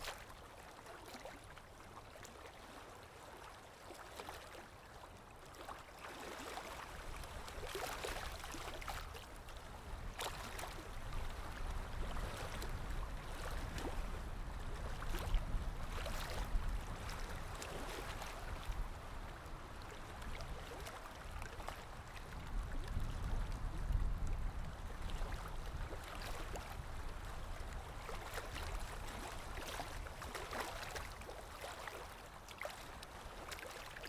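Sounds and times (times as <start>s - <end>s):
small waves lapping and splashing: 0.0s - 34.0s
wind rumbling on microphone: 6.9s - 31.2s.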